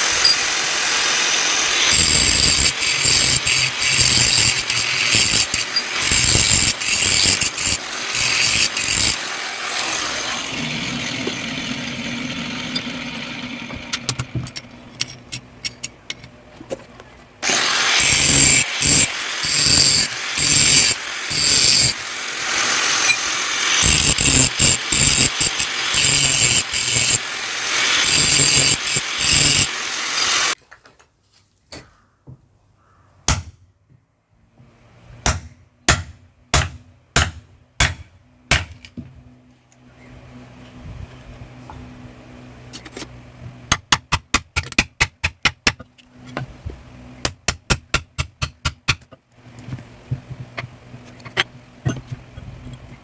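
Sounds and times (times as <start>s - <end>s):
electric grinder on steel: 0.0s - 14.1s, 17.4s - 30.6s.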